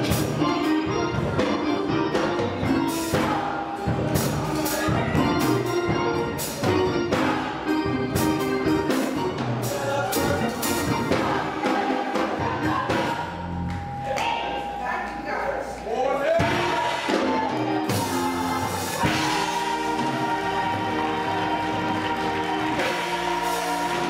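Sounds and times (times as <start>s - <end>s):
drums and cymbal hits: 0.0s - 14.7s, 16.2s - 24.0s
keyboard or organ lines: 0.0s - 15.2s, 16.4s - 24.0s
gospel band playing: 0.0s - 24.0s
people singing: 2.6s - 14.0s, 16.4s - 24.0s.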